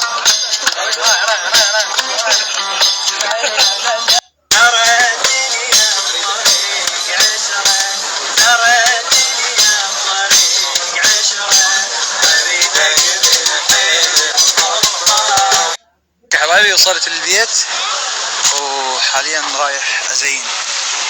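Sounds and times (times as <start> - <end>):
hand percussion beat: 0.0 - 15.8
person singing melodically: 0.0 - 15.8.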